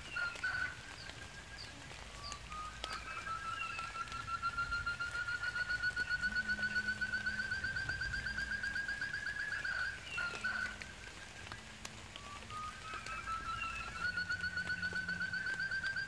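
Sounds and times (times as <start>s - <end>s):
bird trilling: 0.0s - 16.0s.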